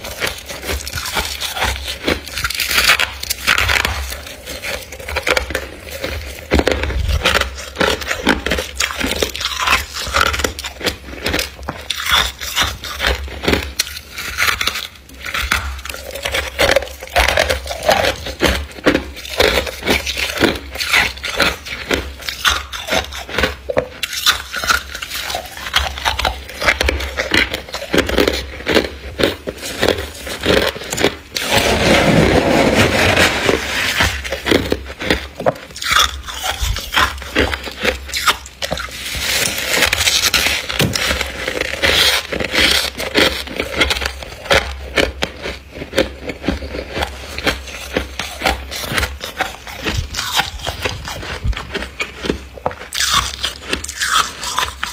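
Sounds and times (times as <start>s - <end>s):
ice crunching and cracking: 0.0s - 54.9s
ice scraping: 27.7s - 44.1s.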